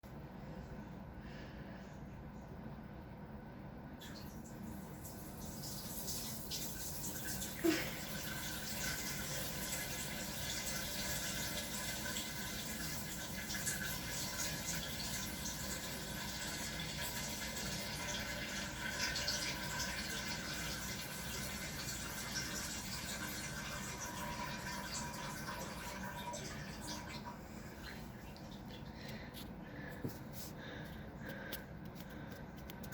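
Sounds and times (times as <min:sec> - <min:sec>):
person urinating: 0:04.0 - 0:29.9.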